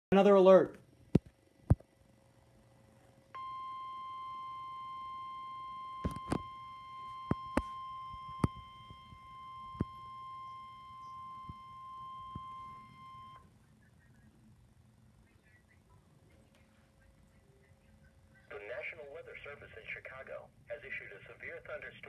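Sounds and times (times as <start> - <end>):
steady high alarm beep: 3.4 - 13.4.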